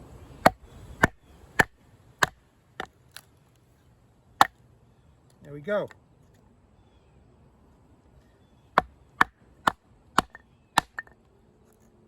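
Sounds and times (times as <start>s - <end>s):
blade chopping into log: 0.4s - 2.9s, 8.8s - 11.1s.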